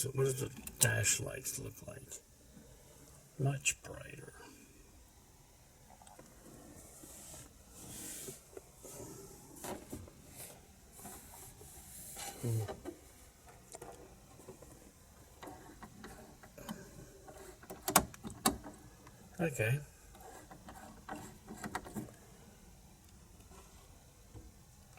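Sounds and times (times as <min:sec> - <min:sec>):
rubbing and rustling: 0:06.3 - 0:18.9, 0:20.1 - 0:22.3.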